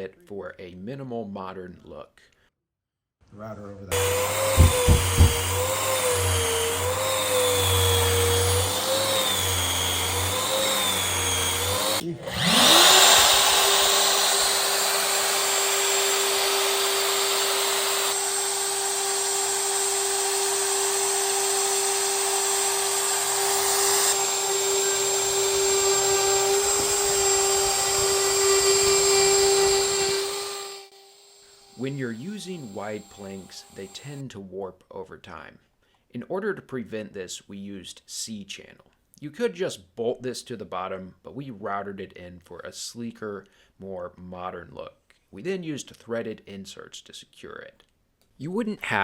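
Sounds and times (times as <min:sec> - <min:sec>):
router high whine: 0:03.9 - 0:34.1.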